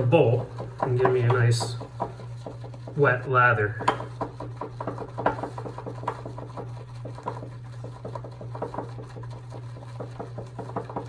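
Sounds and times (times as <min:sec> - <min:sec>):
brush whipping soap into lather: 0:00.0 - 0:11.0
steady low hum: 0:00.0 - 0:11.0.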